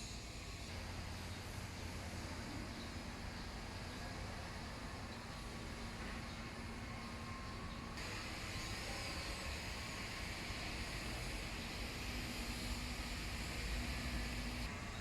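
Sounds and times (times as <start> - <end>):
hiss: 0.0 - 3.0, 8.0 - 14.7
steady mechanical whir: 0.0 - 15.0.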